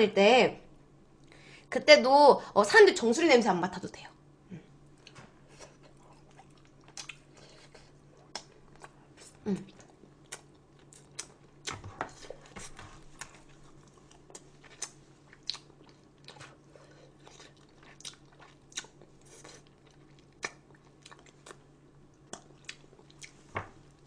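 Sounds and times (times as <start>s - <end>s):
faint steady hum: 0.0s - 24.0s
person biting and chewing food: 5.0s - 23.4s.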